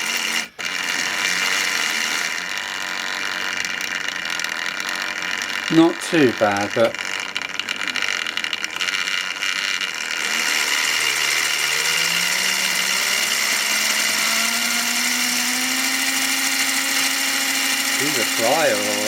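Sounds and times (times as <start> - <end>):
electric motor whine: 0.0 - 19.0
model train rattling on track: 3.6 - 9.1, 15.0 - 19.0.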